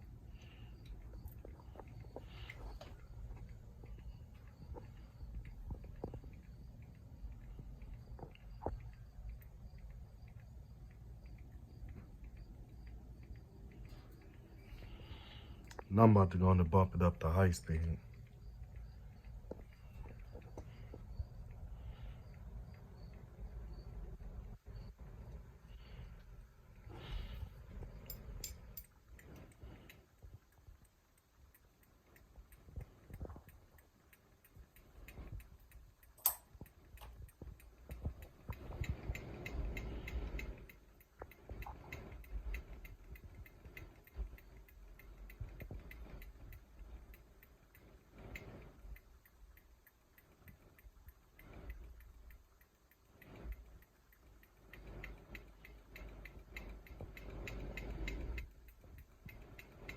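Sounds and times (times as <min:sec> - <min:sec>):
ceiling fan running: 0:00.0 - 0:59.9
light regular ticking: 0:00.0 - 0:59.9
sharp click: 0:36.1 - 0:37.3.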